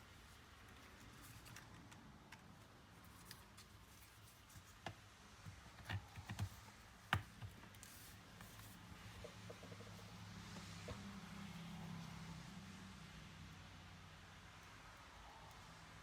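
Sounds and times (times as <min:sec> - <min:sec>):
laptop parts clicking and knocking: 0:04.6 - 0:07.9.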